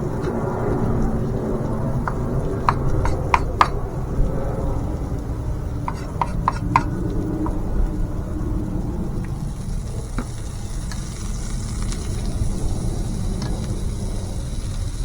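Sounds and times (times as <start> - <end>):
steady low rumble: 0.0 - 15.0
utensils tapping on hard surface: 2.0 - 3.8, 5.9 - 7.6.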